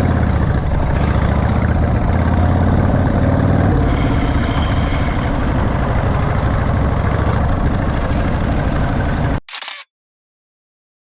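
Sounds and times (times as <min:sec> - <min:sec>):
motorcycle engine lumpy idle: 0:05.9 - 0:09.4.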